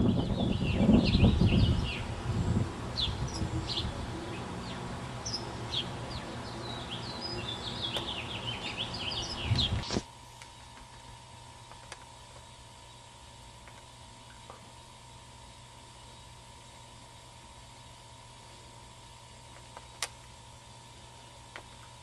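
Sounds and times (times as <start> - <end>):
songbirds chirping: 0.0 - 10.0, 12.0 - 16.7
faint steady hum: 0.0 - 22.0.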